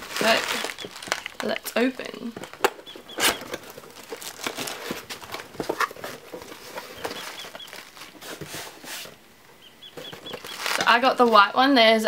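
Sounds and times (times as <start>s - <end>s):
small bird chirping: 0.2s - 3.6s, 6.8s - 8.2s, 9.5s - 11.0s
cardboard box rustling: 2.4s - 9.2s.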